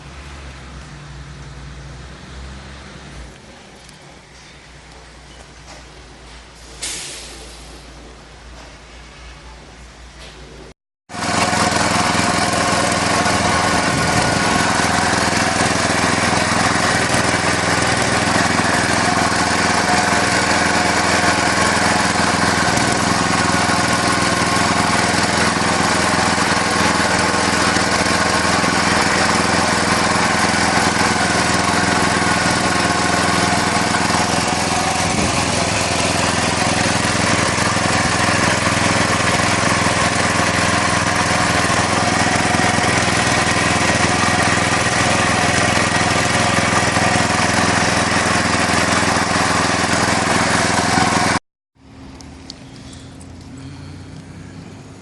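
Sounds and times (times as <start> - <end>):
excavator engine running: 11.1 - 55.0.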